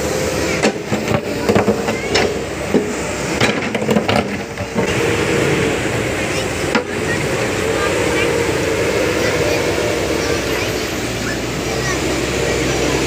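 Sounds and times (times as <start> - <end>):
excavator machinery running: 0.0 - 13.0
sharp knocks and clanks: 0.6 - 5.1.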